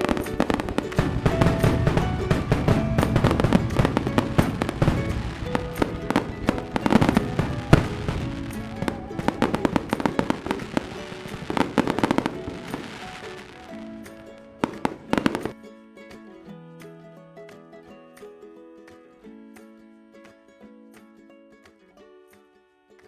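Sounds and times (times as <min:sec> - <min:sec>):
firework bang: 0:00.0 - 0:15.5
fireworks crackling and popping: 0:00.0 - 0:15.6
music: 0:00.0 - 0:23.0.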